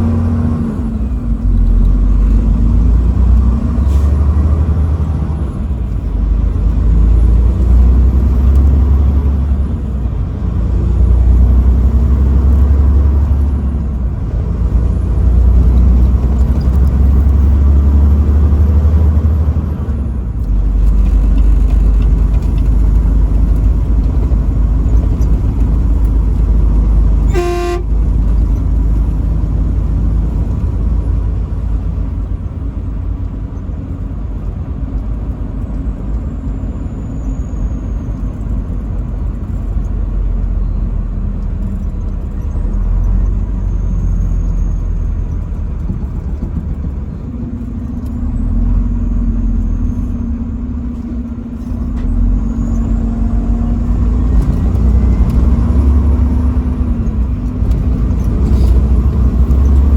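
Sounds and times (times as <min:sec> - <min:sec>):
truck engine and road rumble: 0:00.0 - 0:59.9
truck horn blast: 0:27.2 - 0:28.1.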